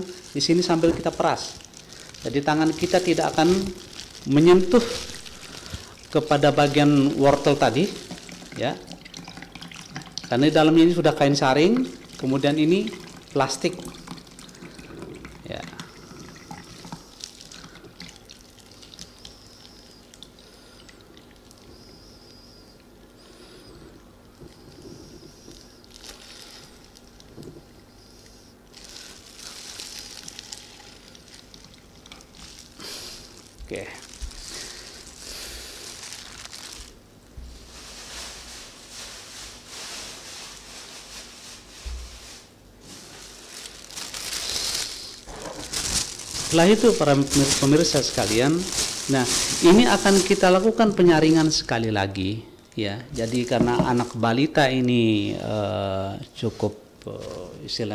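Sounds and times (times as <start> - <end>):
plastic bag crinkling: 0.0 - 27.8, 28.7 - 55.4, 56.6 - 57.8
juice dripping into a container: 0.0 - 37.0.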